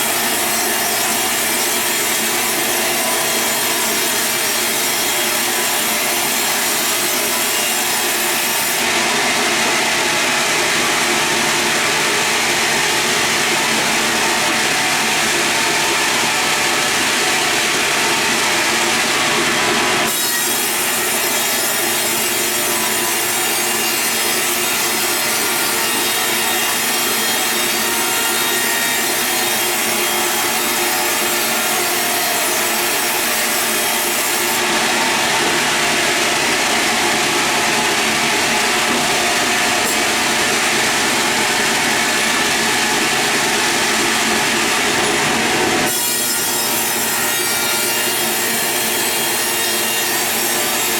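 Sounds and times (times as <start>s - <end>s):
sawmill saw cutting log: 0.0s - 50.9s.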